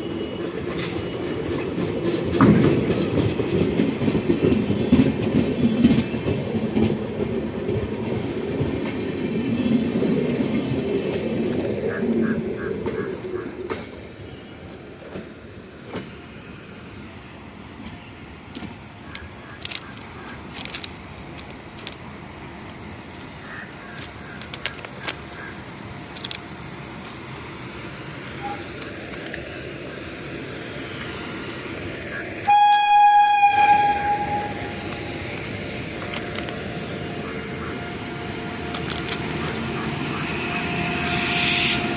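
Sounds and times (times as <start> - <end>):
train rumble: 0.0 - 41.9
locomotive horn blast: 32.4 - 34.7.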